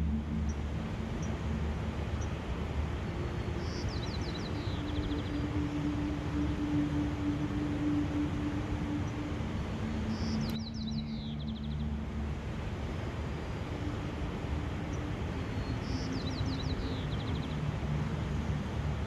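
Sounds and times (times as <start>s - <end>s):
faint low hum: 0.0s - 19.0s
steady rushing background: 0.0s - 19.0s
songbird trilling song: 3.4s - 12.0s, 14.8s - 18.7s.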